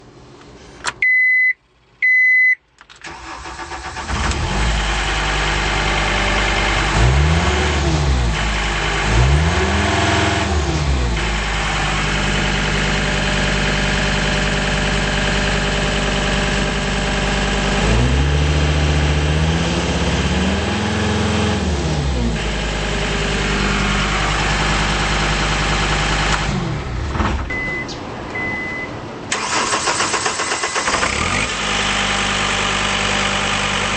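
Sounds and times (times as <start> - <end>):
short beeps: 1.0 - 2.6, 27.5 - 29.0
diesel engine starting and revving: 3.0 - 33.9.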